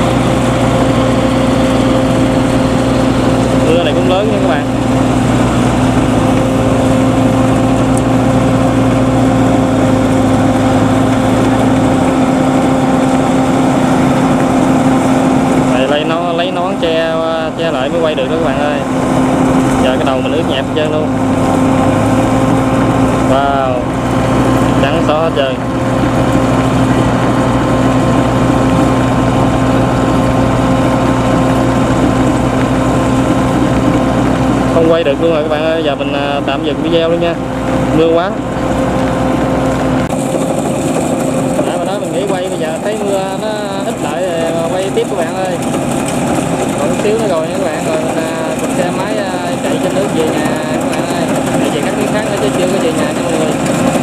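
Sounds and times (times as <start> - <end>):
harvester engine running: 0.0 - 54.0.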